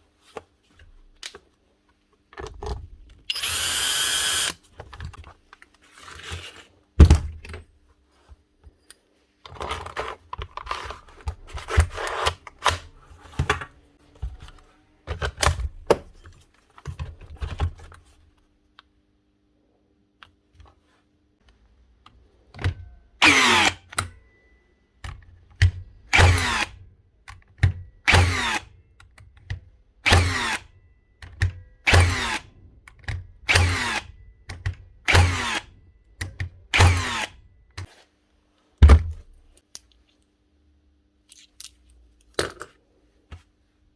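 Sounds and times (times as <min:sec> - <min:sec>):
nail gun firing: 0:23.2 - 0:23.9, 0:26.1 - 0:26.8, 0:28.1 - 0:28.7, 0:30.1 - 0:30.7, 0:31.9 - 0:32.5, 0:33.5 - 0:34.1, 0:35.1 - 0:35.7, 0:36.7 - 0:37.4.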